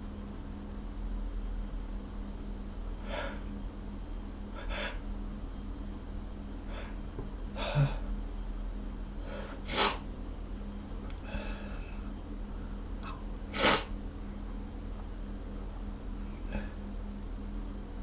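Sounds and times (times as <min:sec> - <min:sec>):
man sniffing: 0:09.4 - 0:10.0, 0:13.5 - 0:13.9.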